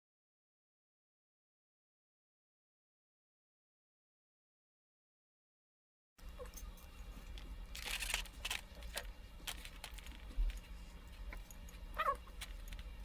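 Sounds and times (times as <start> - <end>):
fruit rind crackling and peeling: 7.2 - 10.6.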